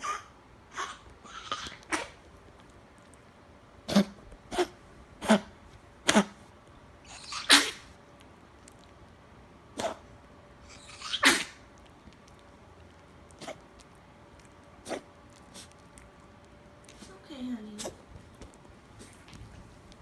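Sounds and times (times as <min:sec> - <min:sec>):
dog coughing and hacking: 0:00.0 - 0:02.2, 0:03.8 - 0:06.4, 0:07.0 - 0:07.9, 0:09.8 - 0:10.1, 0:10.7 - 0:11.7, 0:13.4 - 0:13.7, 0:14.8 - 0:15.7.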